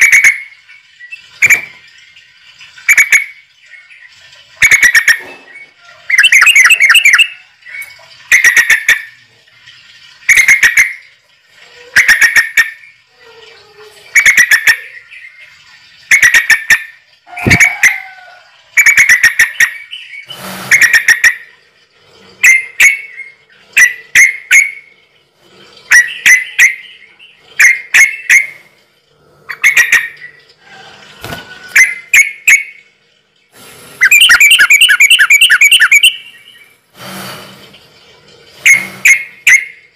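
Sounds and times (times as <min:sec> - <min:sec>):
bird calling harshly: 0:04.6 - 0:07.4, 0:16.1 - 0:21.5, 0:29.5 - 0:30.3, 0:34.0 - 0:36.7.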